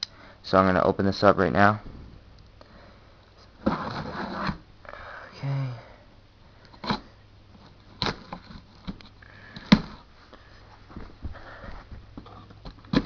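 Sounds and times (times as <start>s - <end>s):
scraping and rustling: 3.4s - 4.6s.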